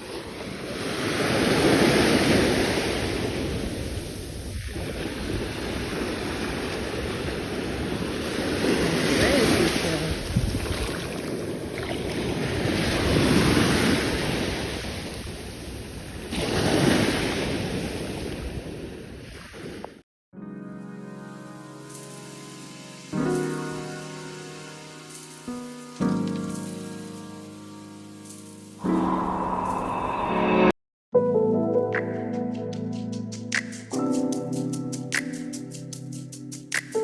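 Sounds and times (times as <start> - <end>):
ocean surf on a beach: 0.0 - 10.4
wind noise on microphone: 1.2 - 9.2, 10.0 - 19.9, 28.8 - 30.7.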